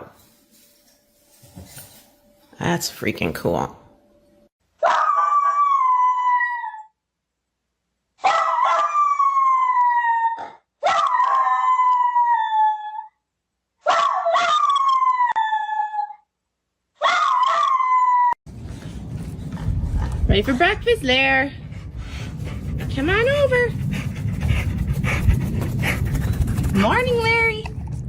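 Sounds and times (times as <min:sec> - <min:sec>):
dog howling: 0:04.8 - 0:06.9, 0:08.2 - 0:13.2, 0:13.8 - 0:16.2.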